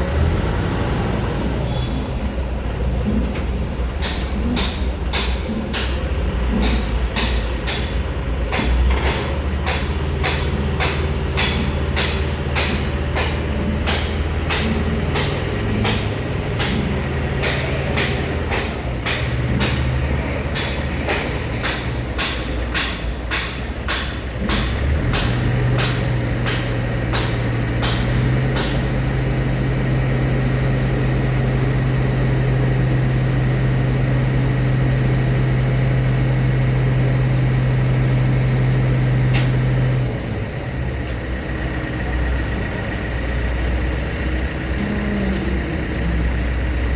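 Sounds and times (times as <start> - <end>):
heavy diesel engine running: 0.0 - 46.9
sharp regular knocks: 4.0 - 29.0.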